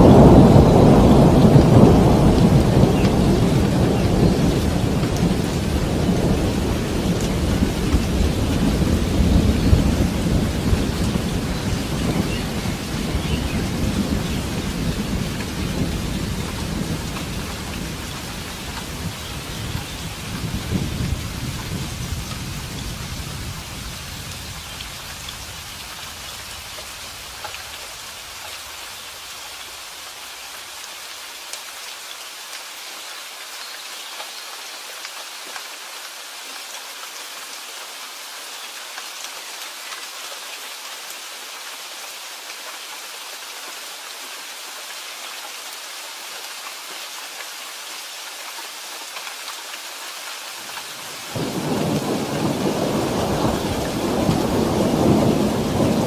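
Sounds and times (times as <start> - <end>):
thunder rumbling: 0.0 - 25.7, 51.2 - 56.0
steady rain: 0.0 - 56.0.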